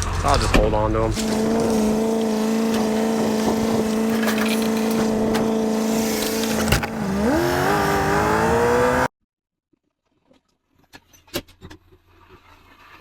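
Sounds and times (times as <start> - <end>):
vehicle engine running: 1.0 - 9.1.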